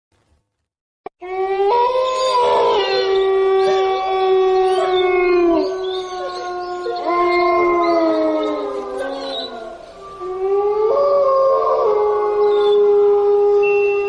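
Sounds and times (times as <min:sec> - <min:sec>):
canids howling in chorus: 0:01.4 - 0:14.0.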